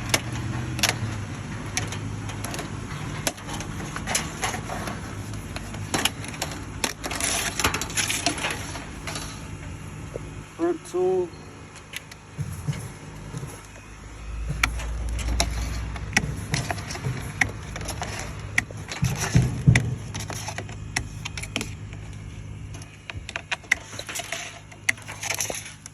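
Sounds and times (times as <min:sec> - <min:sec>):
low rumble: 0:12.4 - 0:20.2.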